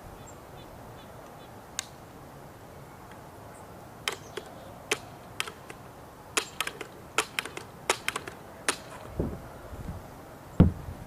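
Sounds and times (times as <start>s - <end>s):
air rifle handling clicks: 4.1s - 5.8s, 6.4s - 9.1s.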